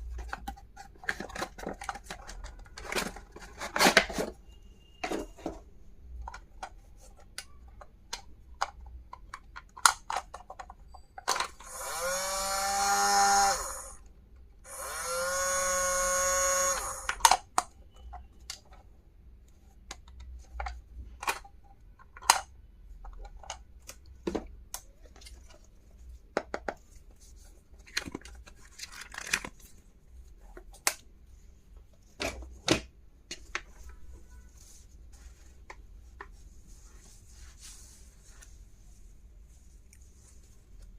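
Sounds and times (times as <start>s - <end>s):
small motor whirring: 11.6s - 14.0s, 14.7s - 17.2s.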